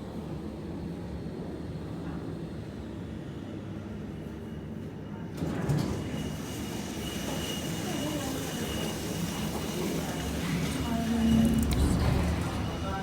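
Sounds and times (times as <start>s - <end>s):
lift car rumbling: 8.4s - 13.0s.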